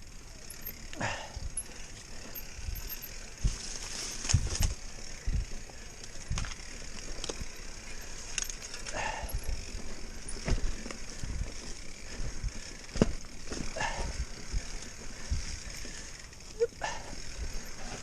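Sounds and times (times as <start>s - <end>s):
mountain bike knocks and clanks: 6.1s - 16.1s.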